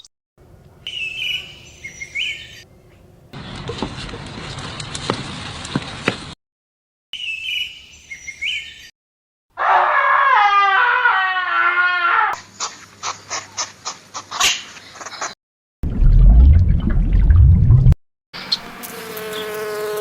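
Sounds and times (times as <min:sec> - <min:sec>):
long wavering animal call: 0:09.6 - 0:12.4.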